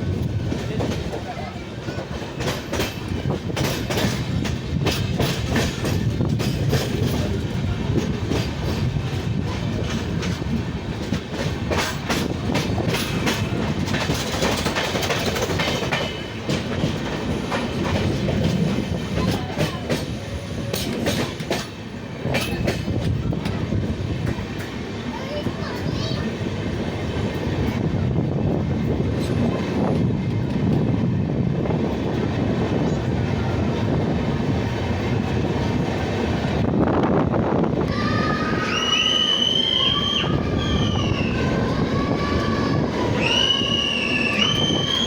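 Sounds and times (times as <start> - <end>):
wheels clicking over rail joints: 0.0 - 27.9
train rumbling through tunnel: 0.0 - 45.0.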